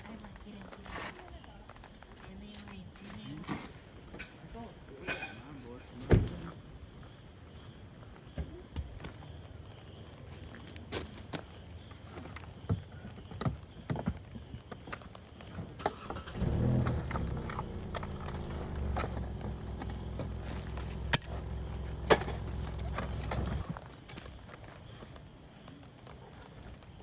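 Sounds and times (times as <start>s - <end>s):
vehicle engine humming: 15.9s - 23.8s.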